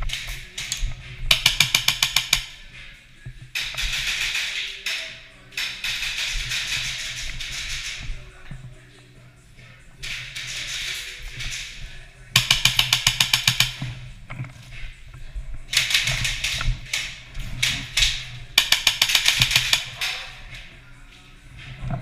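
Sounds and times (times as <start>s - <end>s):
airsoft guns firing bursts: 1.3s - 2.5s, 3.6s - 4.6s, 5.6s - 8.1s, 12.4s - 14.0s, 15.8s - 20.1s.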